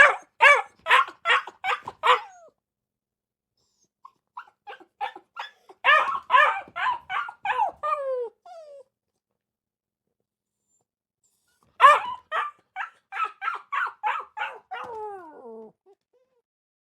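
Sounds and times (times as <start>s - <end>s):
dog whining: 0.0s - 2.5s, 3.6s - 8.9s, 10.6s - 16.4s
dog yapping: 0.0s - 2.5s, 4.4s - 8.7s, 11.8s - 15.4s.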